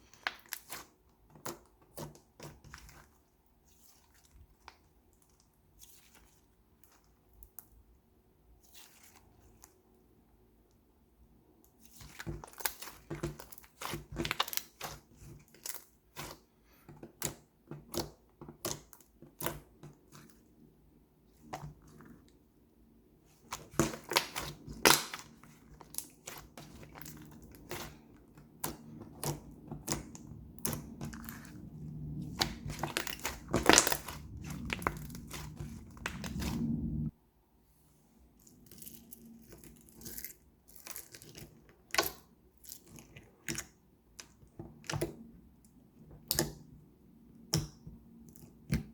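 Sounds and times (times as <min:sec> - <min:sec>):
slime squishing and popping: 0:23.6 - 0:37.1.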